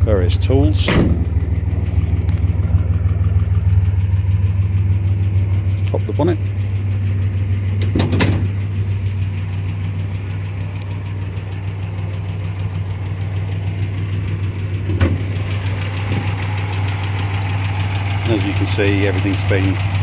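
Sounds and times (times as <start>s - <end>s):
car engine idling: 0.0s - 20.0s
short clunks: 0.8s - 2.8s, 7.7s - 8.8s, 14.8s - 15.4s.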